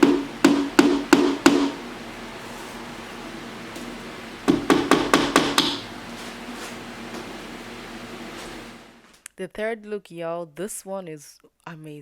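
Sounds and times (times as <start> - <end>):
hammer hitting nail: 0.0 - 1.8, 4.5 - 5.8.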